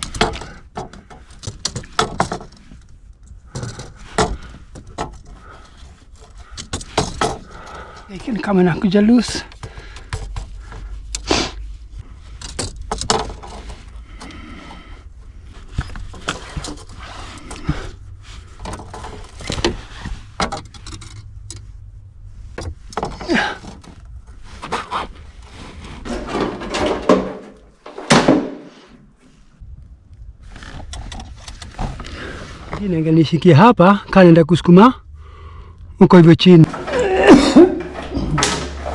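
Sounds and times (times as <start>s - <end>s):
clicks and knocks: 26.0s - 28.7s.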